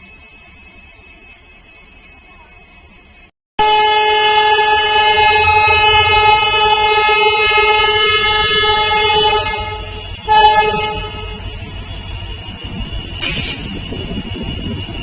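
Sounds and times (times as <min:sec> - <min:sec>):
locomotive horn blasts: 0:03.6 - 0:14.8.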